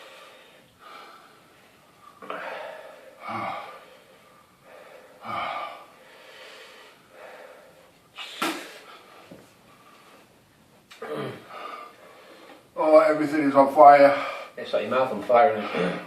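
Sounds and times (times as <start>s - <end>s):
person breathing hard and gasping: 2.1s - 9.4s.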